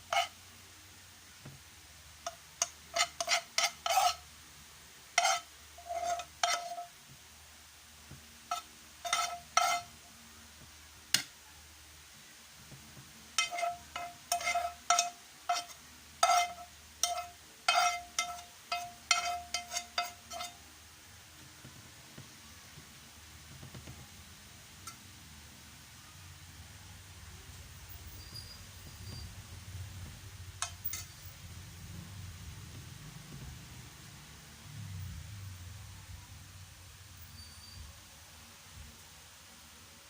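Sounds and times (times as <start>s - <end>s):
metal utensil scraping a pot: 0.0s - 0.4s, 2.2s - 4.2s, 5.2s - 6.9s, 8.5s - 9.9s, 13.4s - 20.6s, 30.6s - 31.3s.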